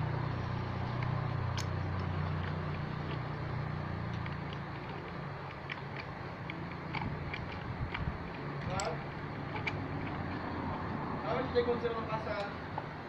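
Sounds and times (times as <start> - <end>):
vehicle engine hum: 0.0 - 13.0
light metallic clicks: 0.9 - 10.8, 12.1 - 12.9.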